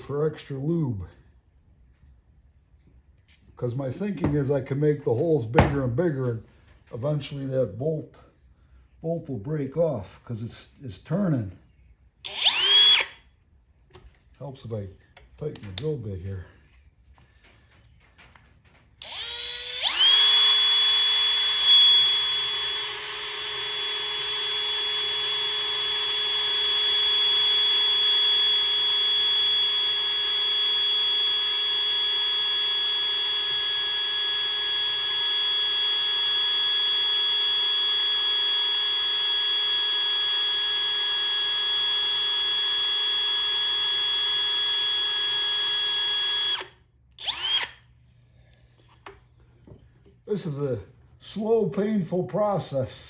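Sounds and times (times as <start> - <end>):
electric drill boring into metal: 12.3 - 13.2, 19.0 - 47.8.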